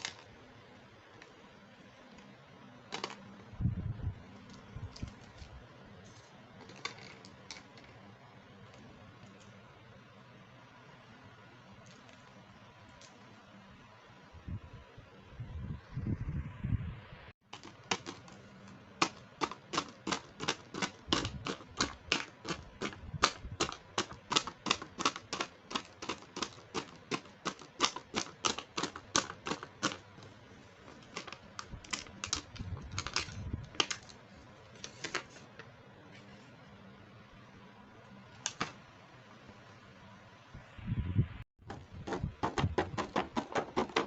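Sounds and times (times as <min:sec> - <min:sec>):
plastic toy parts clicking: 0:00.0 - 0:00.3, 0:17.5 - 0:18.4, 0:19.0 - 0:30.3, 0:30.9 - 0:34.1.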